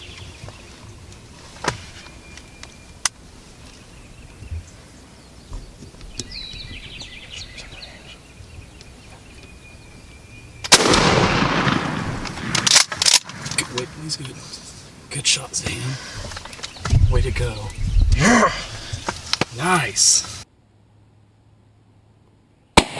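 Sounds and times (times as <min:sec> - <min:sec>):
faint bird calls: 0:00.0 - 0:10.8, 0:13.4 - 0:20.4
shotgun shot echoing: 0:10.7 - 0:13.2.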